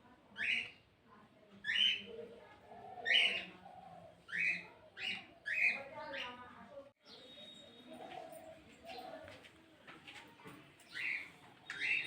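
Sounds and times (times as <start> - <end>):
bird calling: 1.6 - 6.4.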